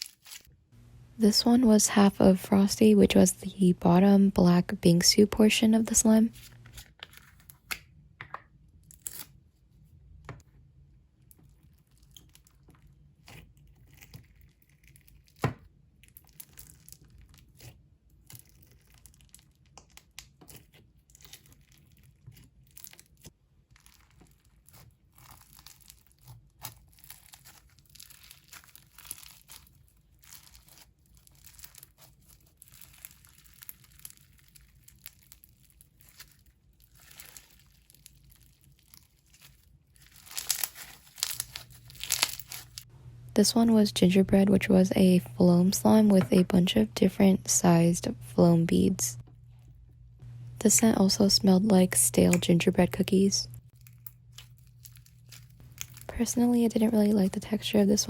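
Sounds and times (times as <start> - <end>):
beads crackling and popping: 0.0 - 0.5, 16.0 - 42.9, 50.3 - 58.0
slime squished by hand: 11.6 - 42.8.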